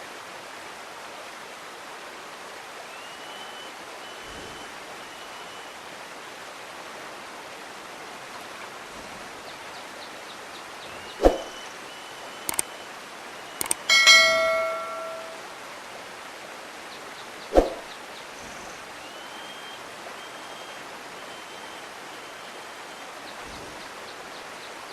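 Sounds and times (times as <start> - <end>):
stream flowing: 0.0 - 24.9
metallic bell-like ring: 13.6 - 15.4
sharp knocks: 13.6 - 15.4.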